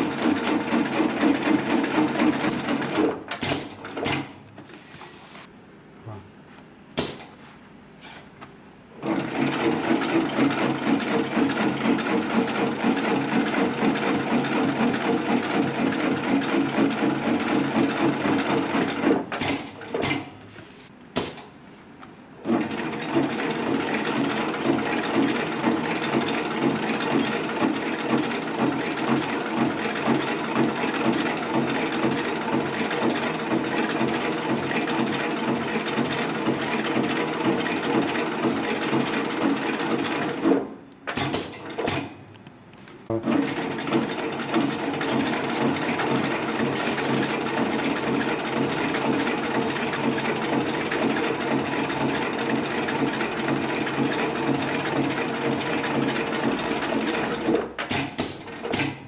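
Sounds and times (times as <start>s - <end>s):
sewing machine stitching: 0.0s - 4.4s, 9.0s - 20.3s, 22.4s - 42.2s, 43.1s - 59.0s
sewing machine clicks: 22.4s - 42.2s, 43.2s - 59.0s.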